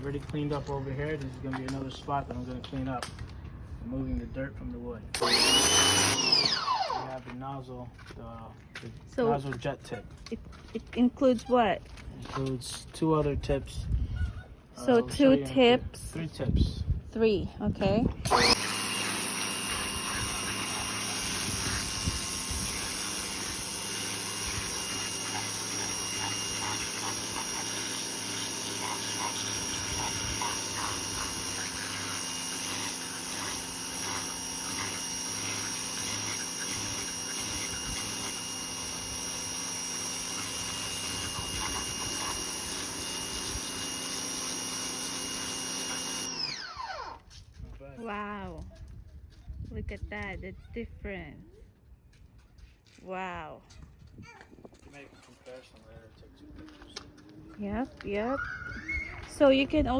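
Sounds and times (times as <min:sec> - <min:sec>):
pressure washer motor whine: 0:05.2 - 0:07.3, 0:18.2 - 0:47.2
water jet hissing: 0:18.3 - 0:46.3.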